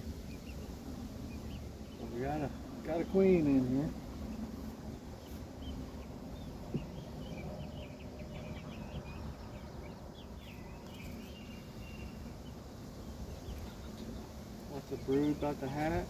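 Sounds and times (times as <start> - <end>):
honeybees humming: 0.0 - 16.0
small bird chirping: 0.1 - 16.0
wind rumble on microphone: 3.9 - 12.4.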